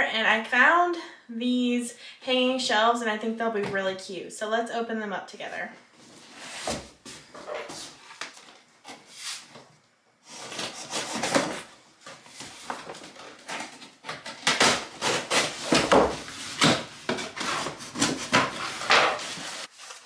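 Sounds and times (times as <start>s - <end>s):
cardboard box being torn open: 10.3s - 11.8s, 12.6s - 20.0s.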